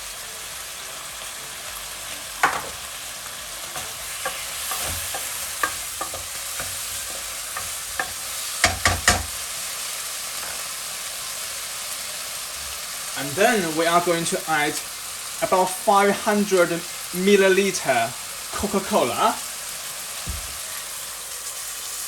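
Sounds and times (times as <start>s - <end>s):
chicken wings sizzling in a saucepan: 0.0s - 22.0s
utensil stirring and clicking on pan: 3.7s - 9.5s, 10.4s - 10.8s
sharp knocks: 8.6s - 9.4s.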